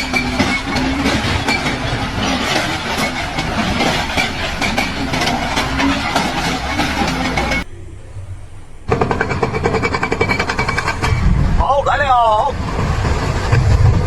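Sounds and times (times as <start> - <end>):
sharp clicks and knocks: 0.0 - 7.7
mechanical clattering and rattling: 0.0 - 14.0
noisy rumble: 0.0 - 14.0.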